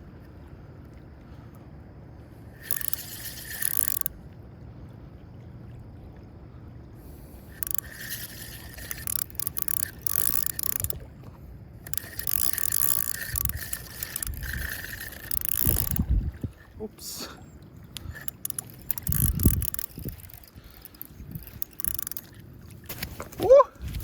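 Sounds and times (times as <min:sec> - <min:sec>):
fishing reel whirring: 0:02.5 - 0:04.2, 0:07.2 - 0:11.1, 0:11.8 - 0:17.2, 0:17.8 - 0:23.4.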